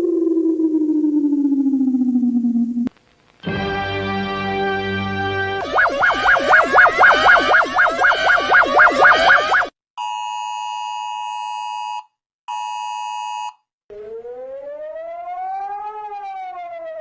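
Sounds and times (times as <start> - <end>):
rising and falling siren: 0.0 - 2.8, 5.6 - 9.7, 13.9 - 17.0
two-tone electronic attention tone: 5.6 - 9.7.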